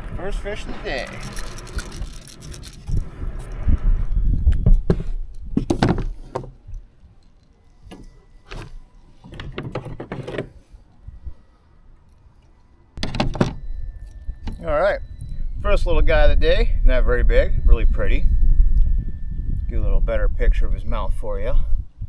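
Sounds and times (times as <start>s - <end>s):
low rumble: 0.0s - 5.8s, 12.9s - 22.0s.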